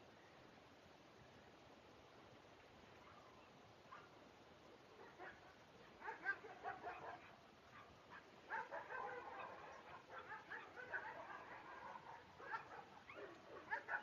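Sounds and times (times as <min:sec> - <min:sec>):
faint animal calls: 0:02.9 - 0:04.2, 0:04.8 - 0:14.0.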